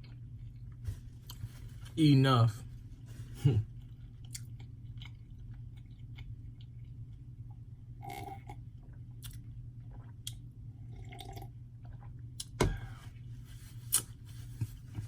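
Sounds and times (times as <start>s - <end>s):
person chewing food: 0.0s - 1.5s, 3.7s - 7.3s
steady low hum: 0.0s - 15.0s.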